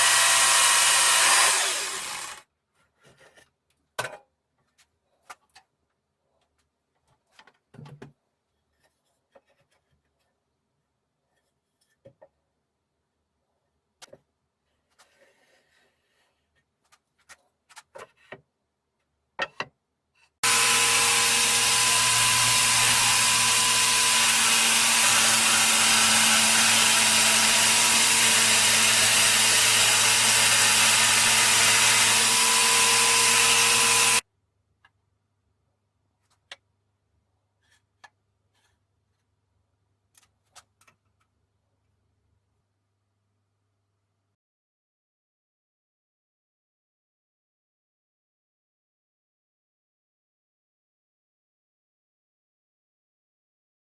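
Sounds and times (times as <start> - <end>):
jigsaw cutting wood: 0.0 - 2.4, 20.4 - 34.2.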